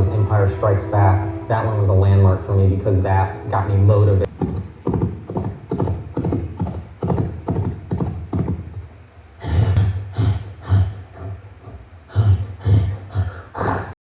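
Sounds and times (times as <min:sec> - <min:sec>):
hoofbeats clip-clopping: 0:04.3 - 0:09.0.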